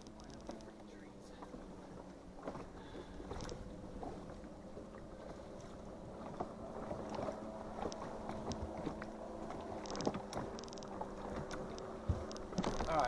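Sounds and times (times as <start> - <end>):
small knocks and clicks: 0.0 - 0.8, 6.3 - 13.0
boat motor humming: 0.0 - 13.0.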